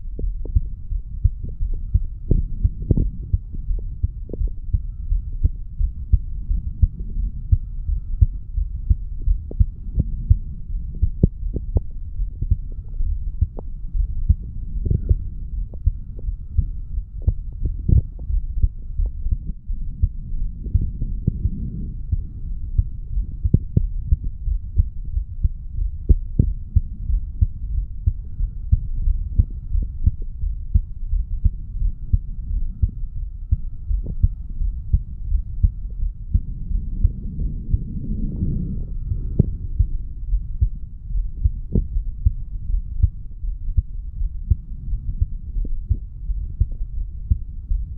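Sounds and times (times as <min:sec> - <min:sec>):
heartbeat thumps: 0:00.0 - 0:47.9.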